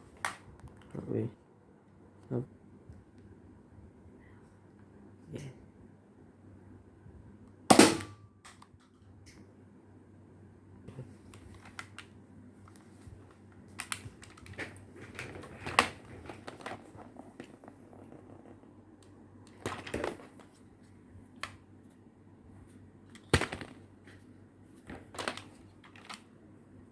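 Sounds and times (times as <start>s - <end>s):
plastic handling clicks: 11.3s - 16.8s, 24.9s - 26.3s.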